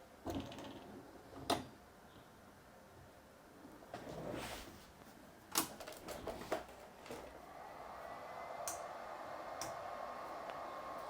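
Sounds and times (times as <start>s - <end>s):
hot-air blower whirring: 7.1s - 11.0s.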